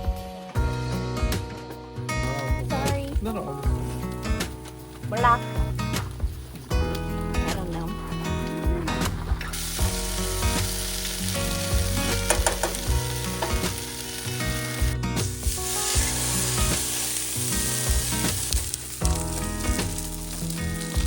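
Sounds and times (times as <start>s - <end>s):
food sizzling in a pan: 2.8s - 21.0s.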